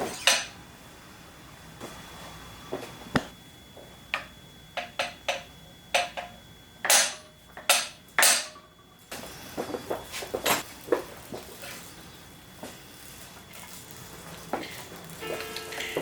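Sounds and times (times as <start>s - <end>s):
hammer tapping metal punch: 4.2s - 8.6s.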